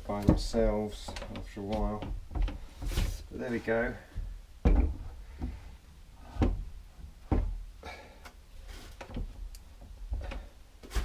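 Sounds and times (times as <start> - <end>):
solid wooden knocks: 0.2 - 3.0, 4.1 - 5.7, 6.3 - 7.6.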